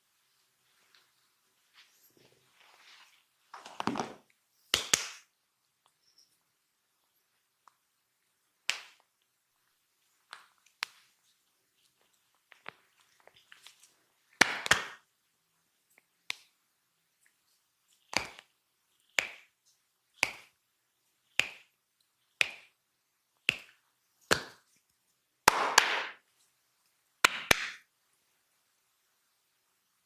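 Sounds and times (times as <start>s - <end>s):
hands slapping body: 4.7s - 5.3s, 8.6s - 9.1s, 14.4s - 15.0s, 18.1s - 18.5s, 19.1s - 19.5s, 20.2s - 20.6s, 21.4s - 21.8s, 22.4s - 22.8s, 23.5s - 24.7s, 25.4s - 26.2s, 27.2s - 27.9s.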